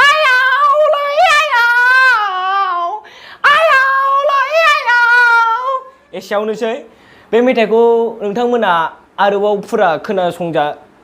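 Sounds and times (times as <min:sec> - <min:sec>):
high-pitched wavering human cries: 0:00.0 - 0:06.0.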